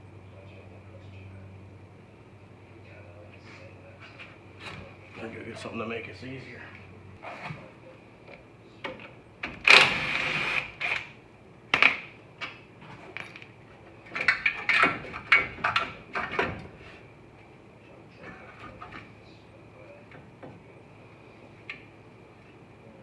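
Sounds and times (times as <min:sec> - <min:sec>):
tool clatters: 0:11.8 - 0:16.8.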